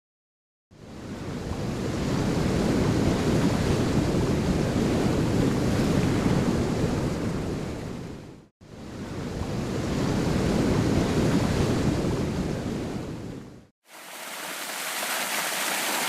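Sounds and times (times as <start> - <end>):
waterfall rushing: 13.9 - 16.0.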